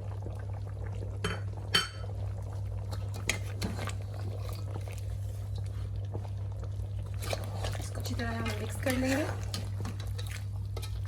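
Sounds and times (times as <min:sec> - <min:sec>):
dishes and spoon clinking on pot: 0:01.3 - 0:02.1, 0:09.4 - 0:11.0.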